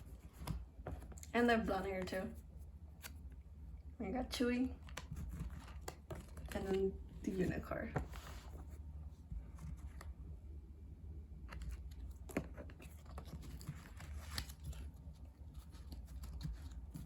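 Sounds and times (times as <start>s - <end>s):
low steady hum: 0.0s - 17.0s
photo cards clicking and rustling: 4.7s - 8.5s, 11.5s - 17.0s.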